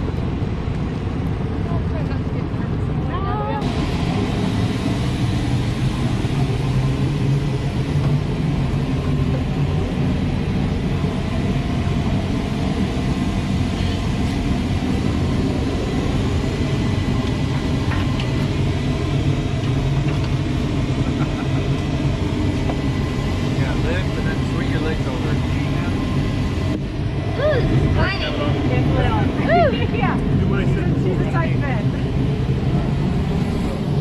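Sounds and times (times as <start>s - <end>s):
low engine drone: 0.0s - 34.0s.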